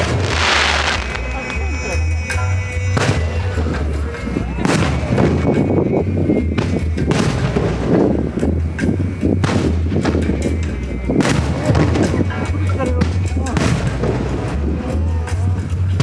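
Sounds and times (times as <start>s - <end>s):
background music: 0.0s - 16.0s
fireworks bangs: 0.0s - 16.0s
fireworks crackling: 0.0s - 16.0s.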